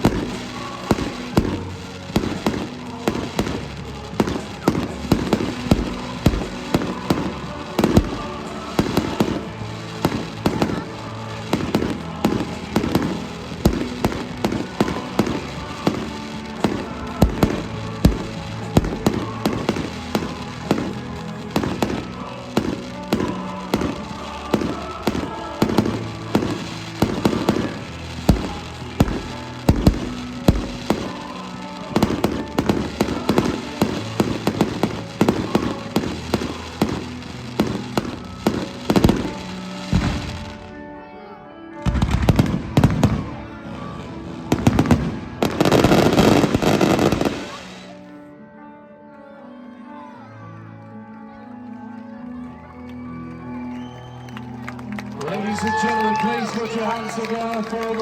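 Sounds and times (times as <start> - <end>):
firework bangs: 0.0 - 40.8, 44.4 - 48.0
music playing: 0.0 - 58.0.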